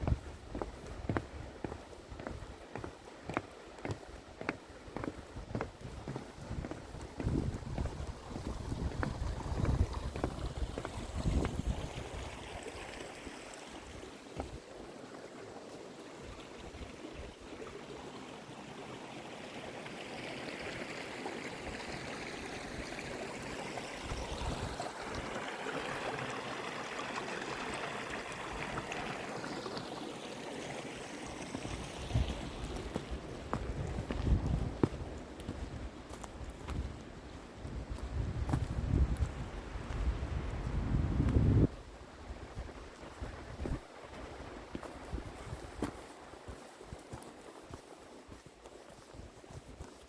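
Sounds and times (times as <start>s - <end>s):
footsteps crunching on snow: 0.0s - 12.1s, 14.3s - 14.6s, 31.2s - 41.8s, 42.5s - 50.0s.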